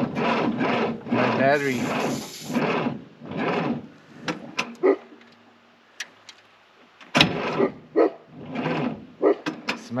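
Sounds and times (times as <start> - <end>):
engine cranking bursts: 0.0 - 4.6, 8.3 - 9.2
starter clicking: 0.2 - 4.8.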